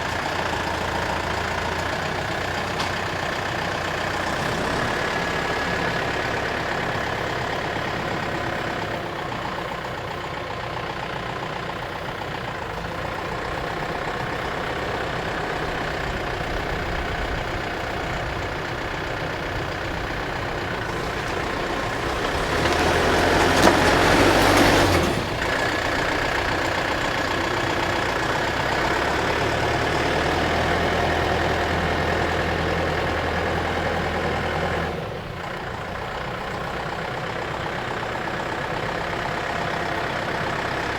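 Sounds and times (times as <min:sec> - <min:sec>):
loader engine running: 0:00.0 - 0:40.9
loud harsh grinding noise: 0:20.6 - 0:28.0.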